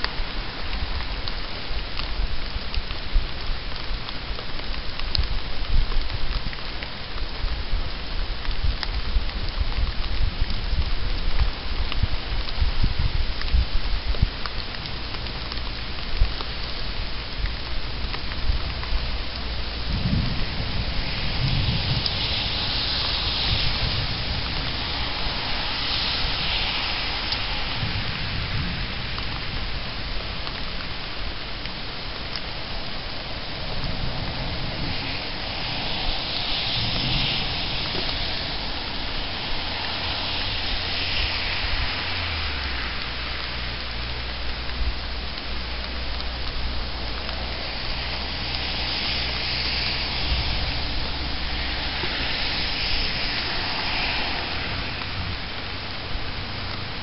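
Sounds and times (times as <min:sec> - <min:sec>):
heavy rain: 0:00.0 - 0:57.0
thunder rumbling: 0:08.6 - 0:31.3, 0:32.1 - 0:43.0.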